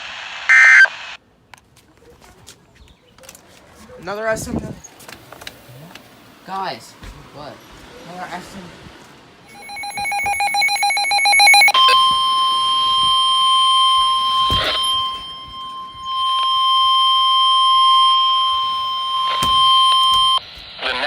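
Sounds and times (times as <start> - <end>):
steady high alarm beep: 9.5 - 20.5.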